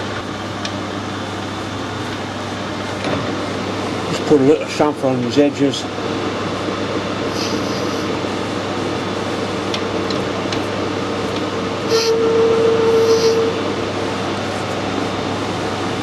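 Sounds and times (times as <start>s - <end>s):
metal lathe humming: 6.0s - 16.0s
tool cutting tone: 11.9s - 13.6s.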